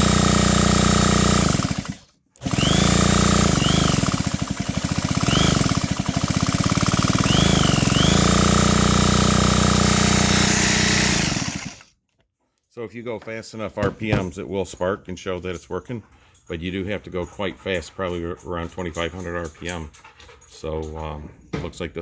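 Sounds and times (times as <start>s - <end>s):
electric drill spinning engine: 0.0s - 12.0s.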